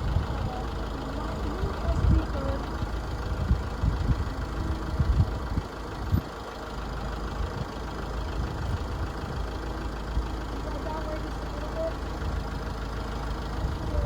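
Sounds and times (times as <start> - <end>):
dull low thumps: 0.0 - 6.3
heavy machinery engine idling: 0.0 - 14.0.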